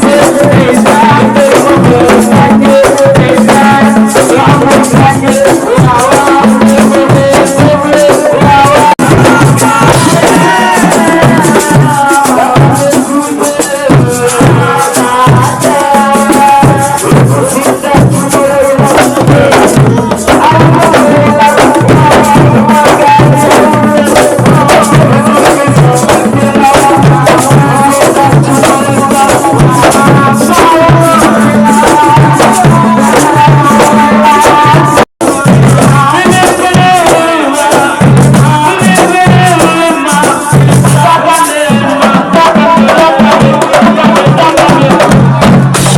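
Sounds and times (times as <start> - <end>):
person singing: 0.0 - 45.9
rattling percussion: 0.0 - 45.9
steady drum beat: 0.0 - 45.9.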